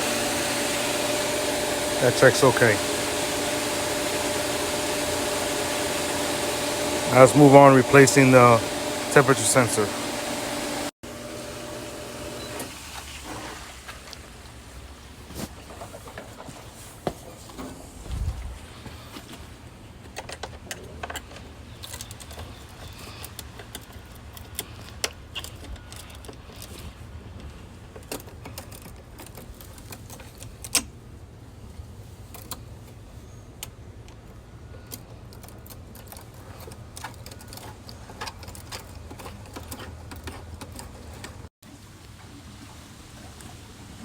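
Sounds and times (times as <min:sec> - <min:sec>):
tools and plastic parts clicking: 0:20.0 - 0:30.9, 0:33.6 - 0:41.4.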